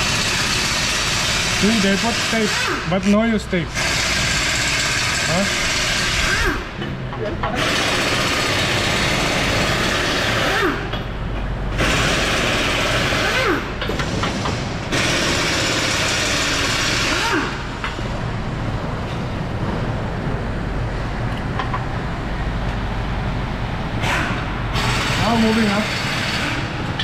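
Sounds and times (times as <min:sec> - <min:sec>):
power tool running: 0:03.7 - 0:06.6, 0:24.0 - 0:26.8.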